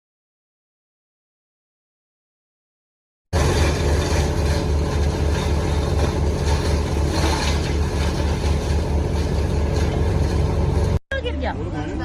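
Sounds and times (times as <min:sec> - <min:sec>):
low pulsing hum: 0:03.4 - 0:12.0
wind: 0:03.4 - 0:12.0.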